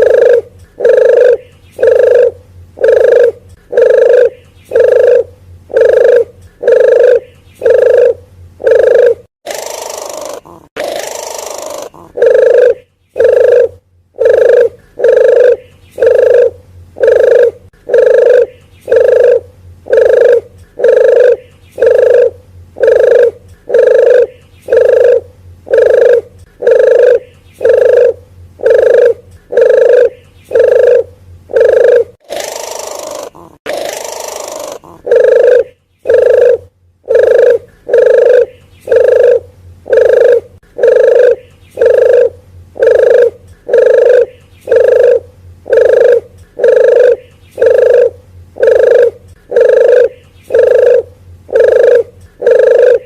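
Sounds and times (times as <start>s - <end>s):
dove cooing: 0.0s - 53.0s.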